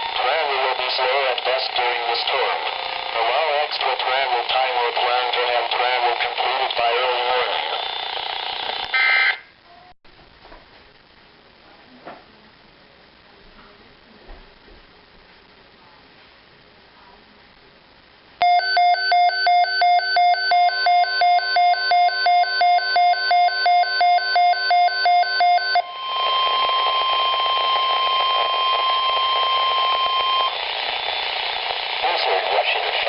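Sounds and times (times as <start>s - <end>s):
radio static: 0.0s - 9.5s, 20.8s - 33.0s
rapid electronic beeps: 18.4s - 31.3s.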